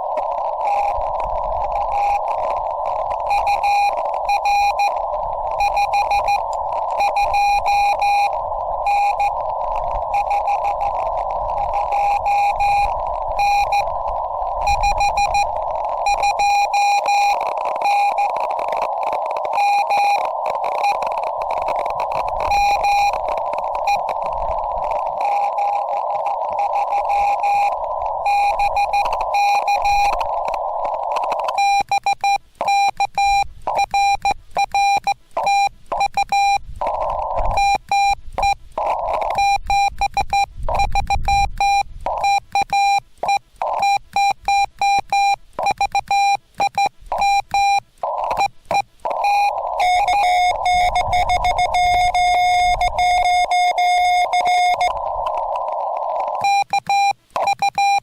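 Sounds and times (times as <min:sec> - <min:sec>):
steady lower tone: 0:00.0 - 0:31.6, 0:47.1 - 0:56.4
radio hiss: 0:00.0 - 0:58.0
morse code beeping tone: 0:00.2 - 0:58.0.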